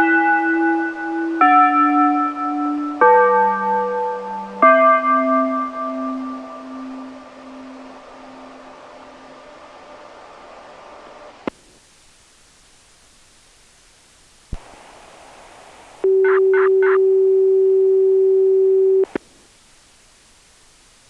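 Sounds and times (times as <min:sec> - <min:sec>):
loud steady tone: 0:00.0 - 0:11.4, 0:16.0 - 0:19.4
low hiss: 0:00.0 - 0:21.0
radio click: 0:14.5 - 0:15.1, 0:19.0 - 0:19.4.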